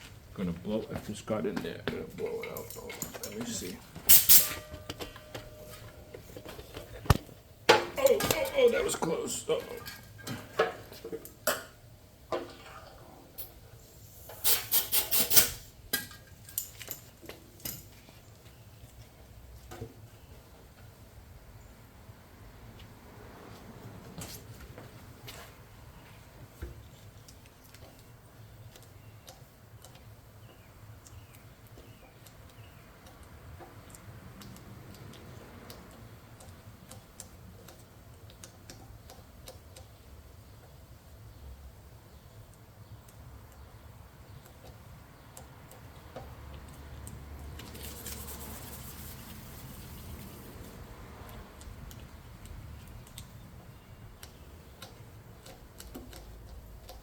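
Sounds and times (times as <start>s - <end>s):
handling clicks and knocks: 1.5s - 8.8s
hand scraping strokes: 47.5s - 50.8s.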